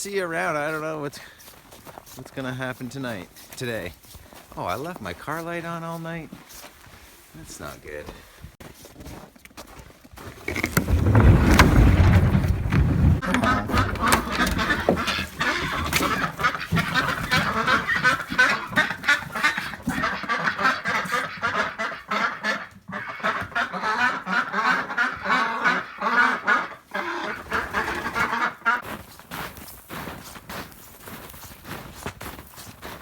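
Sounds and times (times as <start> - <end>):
ducks quacking: 11.1 - 28.8.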